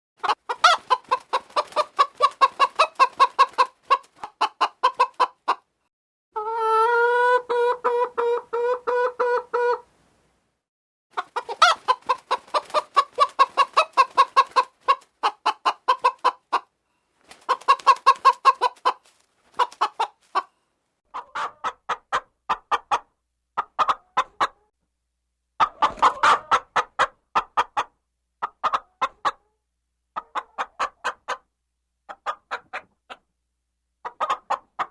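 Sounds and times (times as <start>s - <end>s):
chickens clucking: 0.2s - 5.7s, 6.4s - 9.9s, 11.1s - 24.7s, 25.6s - 33.4s, 34.0s - 34.9s
chicken long held call: 6.4s - 9.8s.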